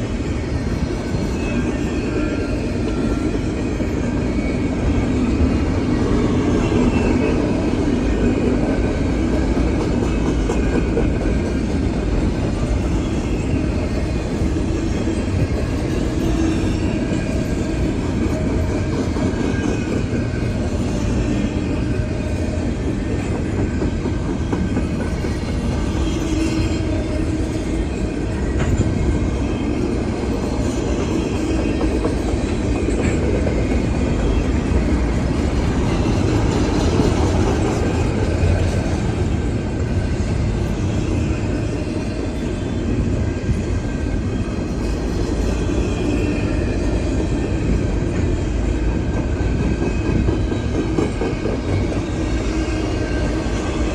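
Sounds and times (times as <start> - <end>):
train wheels rumbling on rails: 0.0 - 53.9.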